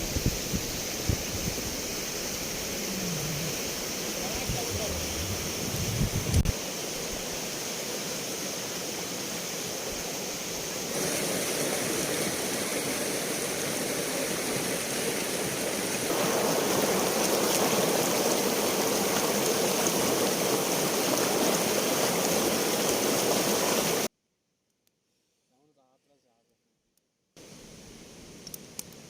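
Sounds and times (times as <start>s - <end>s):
river water rushing: 1.6s - 24.1s.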